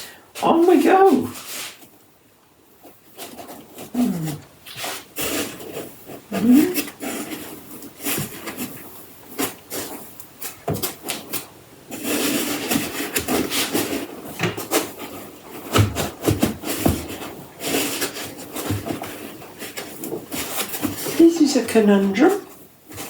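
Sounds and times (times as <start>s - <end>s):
hands rubbing and scraping packaging: 0.4s - 2.0s, 2.8s - 23.0s.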